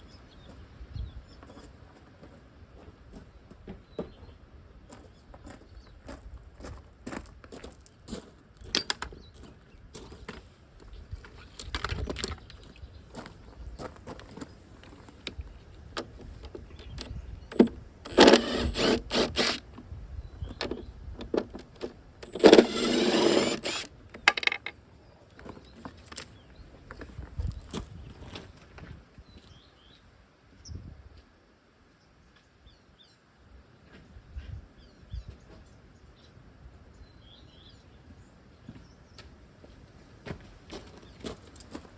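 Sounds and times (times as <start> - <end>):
metal tools clicking and clattering: 8.7 - 9.1
noisy handling bursts: 16.0 - 19.8, 20.5 - 24.7.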